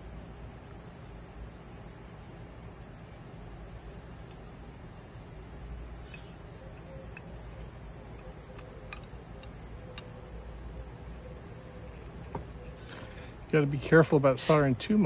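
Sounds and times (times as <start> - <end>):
crickets chirping: 0.0 - 15.0
faint clicks: 8.2 - 10.1.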